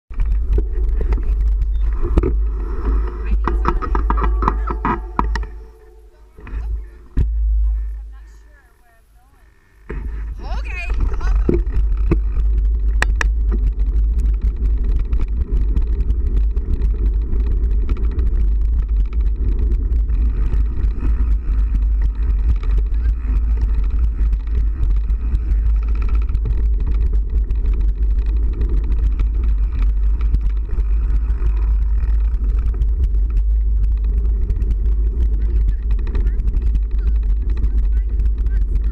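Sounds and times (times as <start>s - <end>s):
vehicle driving rumble: 0.1s - 38.9s.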